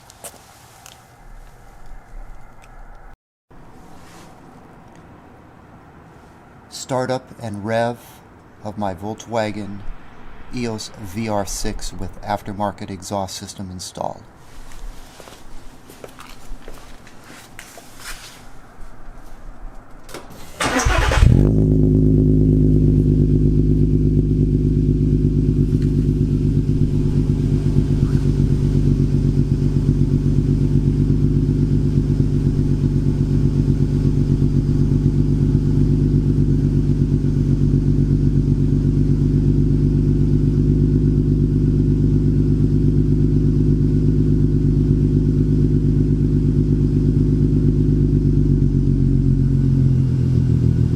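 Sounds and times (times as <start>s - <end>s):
car engine idling: 18.9s - 50.9s.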